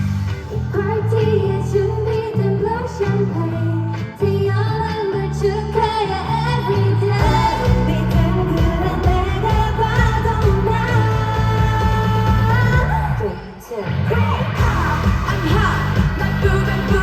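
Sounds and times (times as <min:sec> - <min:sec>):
pop song over loudspeakers: 0:00.0 - 0:17.0
female group vocals: 0:00.6 - 0:17.0.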